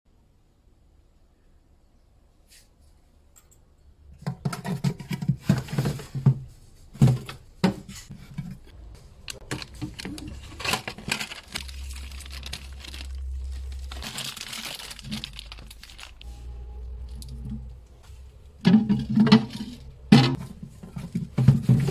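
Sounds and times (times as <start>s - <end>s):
knocks and clicks of items: 4.2s - 11.6s, 17.2s - 21.9s
steady low hum: 6.4s - 21.9s
plastic packaging crinkling: 9.0s - 16.5s.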